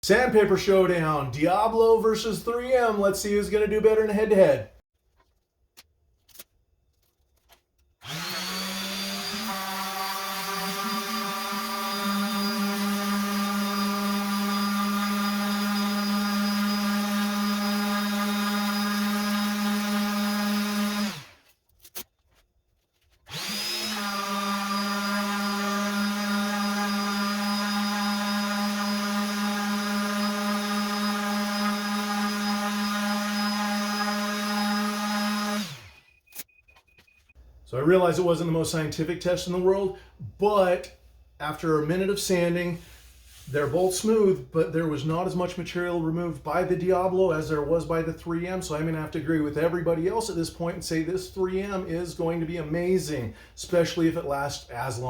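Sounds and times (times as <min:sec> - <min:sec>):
orbital sander humming: 0:08.0 - 0:21.4, 0:23.3 - 0:36.0.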